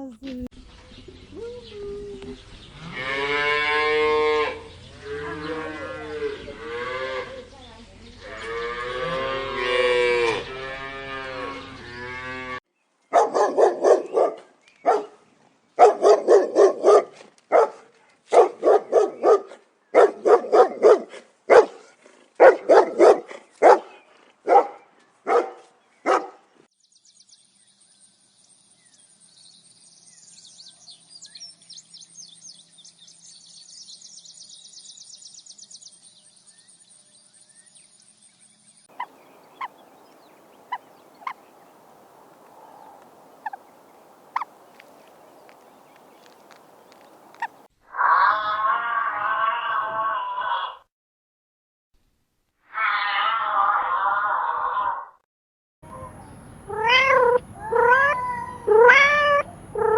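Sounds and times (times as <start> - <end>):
cattle mooing: 56.7 - 59.9.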